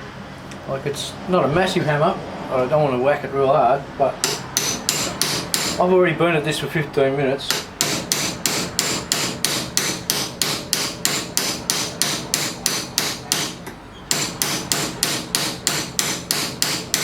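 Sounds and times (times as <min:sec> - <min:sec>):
small hammer striking metal: 0:04.2 - 0:05.8, 0:07.5 - 0:17.0.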